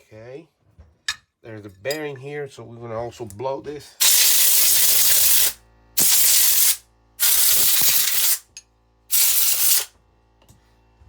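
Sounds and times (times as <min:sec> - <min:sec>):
compressed air blasts: 0:04.0 - 0:08.5, 0:09.1 - 0:09.9.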